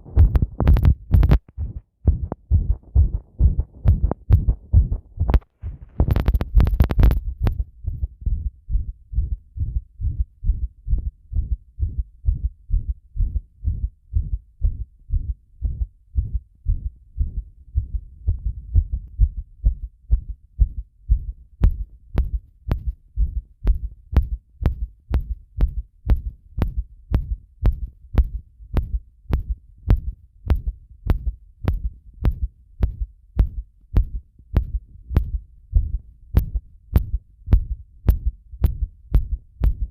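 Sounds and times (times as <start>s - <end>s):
microphone scraping rub: 0.0s - 8.1s
heartbeat thumps: 0.0s - 39.9s
sharp click with heartbeat: 0.0s - 39.9s.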